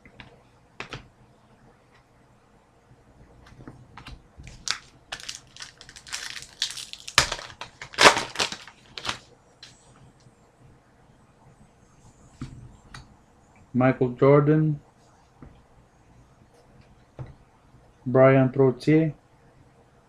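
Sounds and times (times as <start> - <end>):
card pack wrapper crinkling: 4.4 - 9.3.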